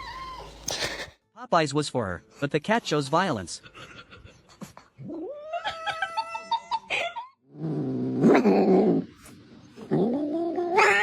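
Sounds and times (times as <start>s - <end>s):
cat yowling: 10.2s - 11.0s.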